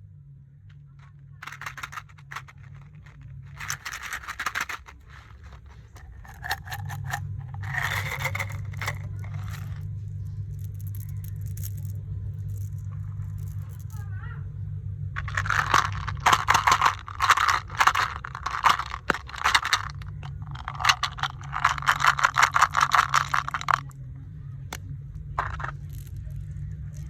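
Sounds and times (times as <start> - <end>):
steady low hum: 0.0 - 27.0
candy packaging crinkling: 1.0 - 9.8, 15.2 - 23.9, 25.4 - 25.9.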